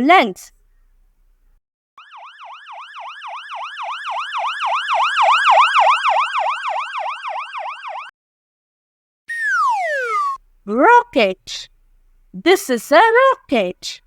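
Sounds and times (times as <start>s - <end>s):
ambulance siren yelping: 2.0s - 8.1s, 9.3s - 10.4s.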